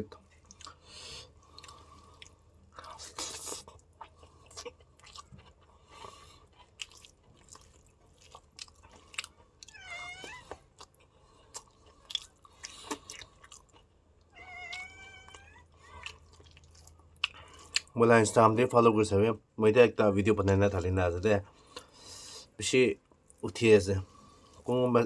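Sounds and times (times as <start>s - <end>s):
wet chewing and smacking: 0.2s - 18.0s.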